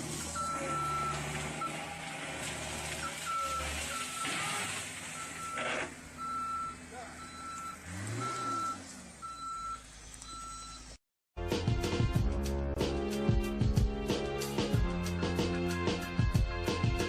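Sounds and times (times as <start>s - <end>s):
diesel engine running: 0.0s - 11.0s
reversing alarm beeping: 0.4s - 1.8s, 3.0s - 4.6s, 5.2s - 11.0s
music: 11.4s - 17.0s.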